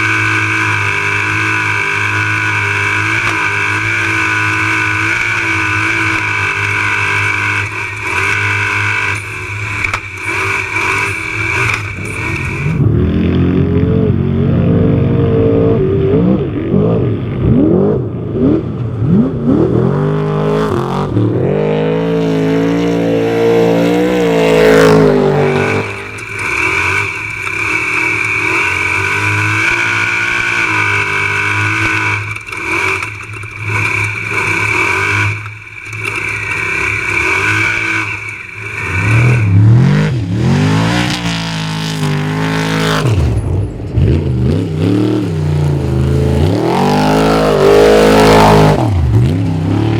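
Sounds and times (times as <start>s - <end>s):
truck engines revving and passing: 0.0s - 49.9s
high-pitched engine note: 20.4s - 27.0s.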